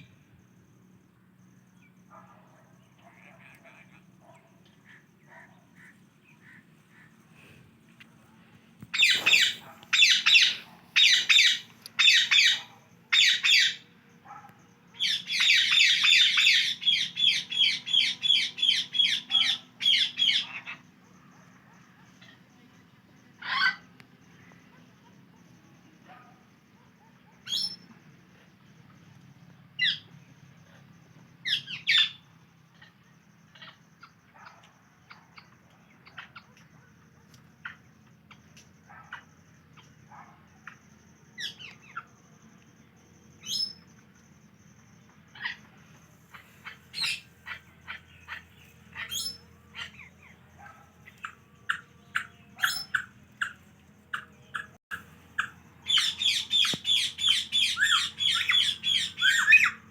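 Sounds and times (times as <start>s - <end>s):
parrot calling: 8.9s - 14.4s, 15.0s - 20.8s, 23.4s - 23.8s, 46.3s - 59.9s.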